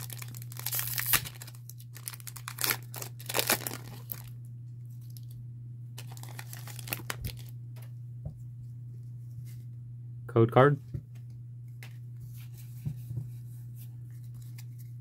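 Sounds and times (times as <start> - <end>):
foil wrapper tearing and crinkling: 0.0 - 4.4, 6.0 - 7.5.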